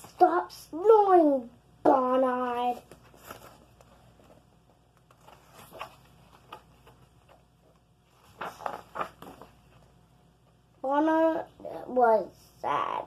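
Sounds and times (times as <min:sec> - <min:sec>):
paper pages rustling: 0:02.5 - 0:10.0
soft handling noises: 0:02.5 - 0:10.7.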